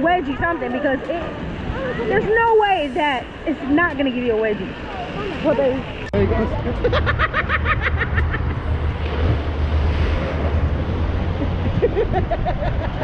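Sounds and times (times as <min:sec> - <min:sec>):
wind buffeting microphone: 0:00.0 - 0:13.0
rushing water: 0:08.8 - 0:11.8.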